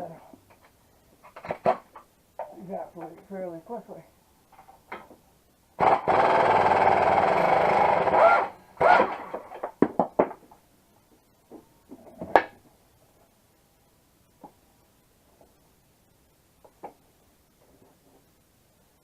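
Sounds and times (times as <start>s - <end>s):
power tool buzzing: 5.8s - 9.4s.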